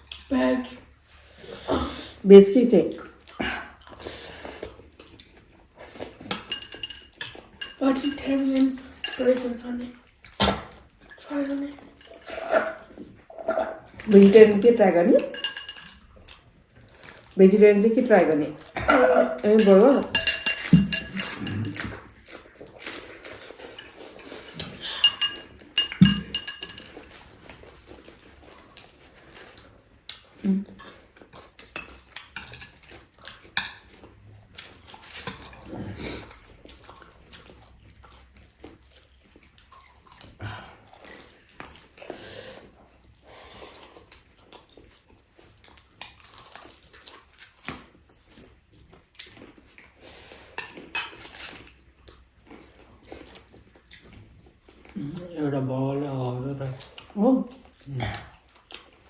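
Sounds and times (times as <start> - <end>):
cutlery and dishes clinking: 6.1 - 9.5, 11.8 - 12.9, 13.9 - 16.0, 18.8 - 22.2, 23.6 - 27.3, 31.8 - 32.9, 33.5 - 34.0, 34.9 - 35.7, 50.6 - 51.7.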